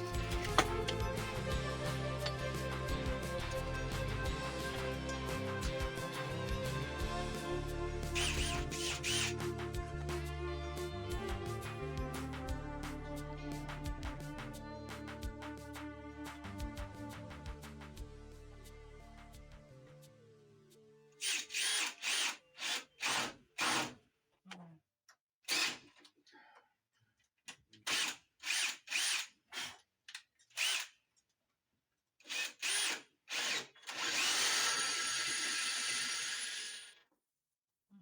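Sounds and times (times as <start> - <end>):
power drill whining: 0.0 - 3.9, 8.2 - 9.4, 21.2 - 23.9, 25.5 - 25.9, 27.9 - 29.8, 30.6 - 30.9, 32.3 - 37.0.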